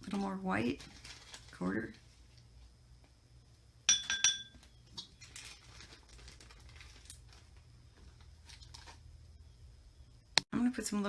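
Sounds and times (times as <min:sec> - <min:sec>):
metal spoon clinking on container: 0:03.9 - 0:04.6.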